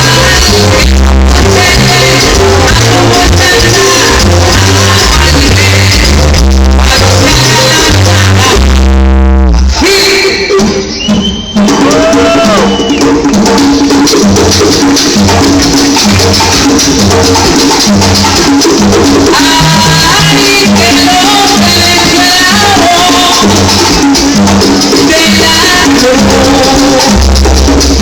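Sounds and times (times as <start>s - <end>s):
salsa band playing: 0.0s - 28.0s.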